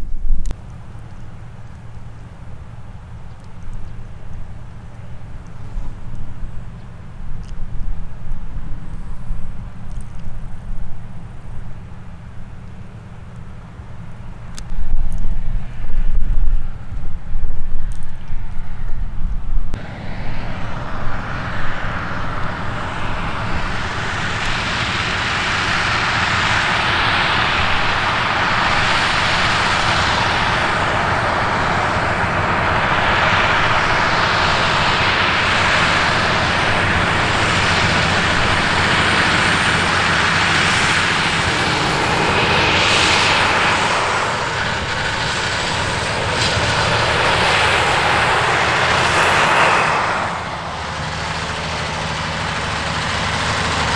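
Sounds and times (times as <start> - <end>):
heavy farm machinery running: 19.8 - 53.9.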